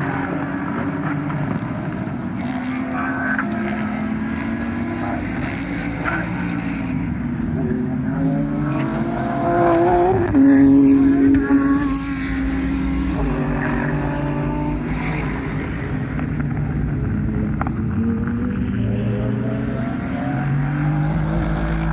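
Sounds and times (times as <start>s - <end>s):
race car engines running: 0.0s - 21.9s.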